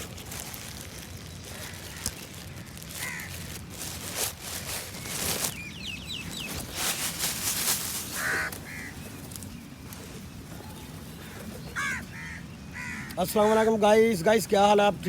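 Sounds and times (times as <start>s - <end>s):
rustling noises: 0.0s - 12.3s
crow cawing: 1.4s - 3.6s, 8.1s - 9.0s, 11.1s - 13.8s
small bird chirping: 4.8s - 13.2s.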